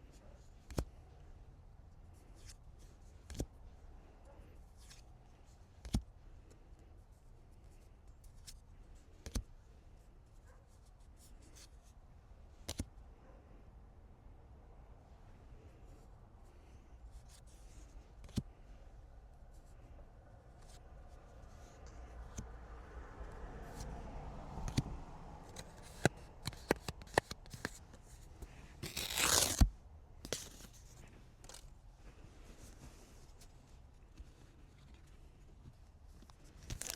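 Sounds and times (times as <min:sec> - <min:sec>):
cards rustling and scraping: 0:00.0 - 0:01.3, 0:02.1 - 0:06.8, 0:07.4 - 0:09.5, 0:10.7 - 0:12.9, 0:15.5 - 0:22.6, 0:23.2 - 0:36.9
card packaging taps and crinkles: 0:25.5 - 0:27.8, 0:36.6 - 0:36.9
packaging tearing: 0:28.8 - 0:29.7, 0:36.6 - 0:36.9.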